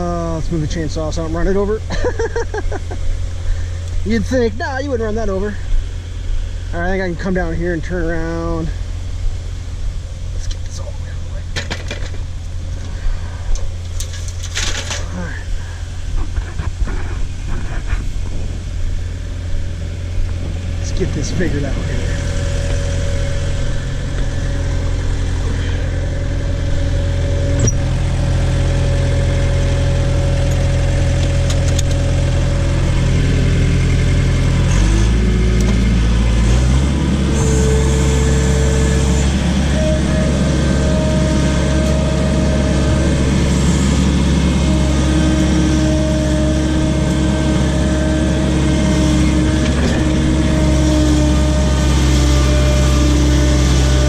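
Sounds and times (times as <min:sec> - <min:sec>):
backhoe engine running: 0:00.0 - 0:54.0
high whining tones: 0:15.6 - 0:54.0.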